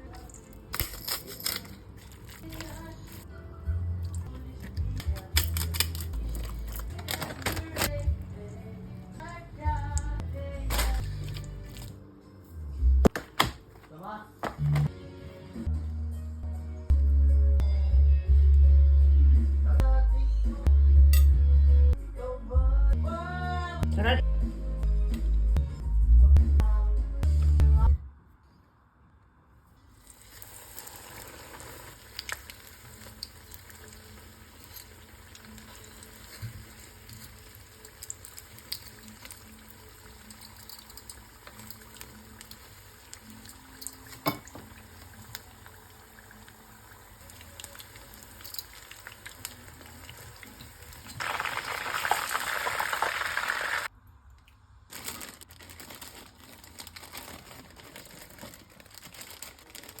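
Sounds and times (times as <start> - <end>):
oil sizzling: 29.9 - 53.9.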